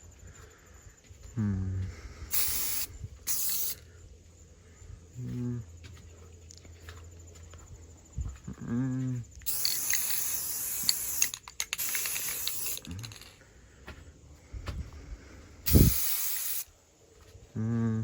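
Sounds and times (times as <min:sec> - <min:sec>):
spray can hissing: 0:02.3 - 0:03.8, 0:09.4 - 0:13.3, 0:15.7 - 0:16.7.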